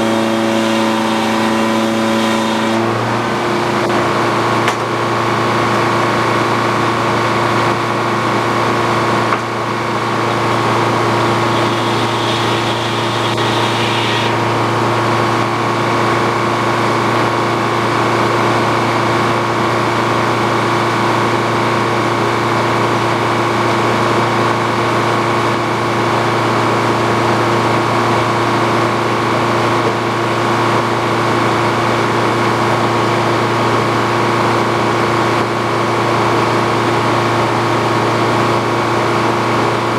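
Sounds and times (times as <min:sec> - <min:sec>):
sawmill machinery humming: 0:00.0 - 0:39.9
high-pitched whine: 0:10.5 - 0:15.0.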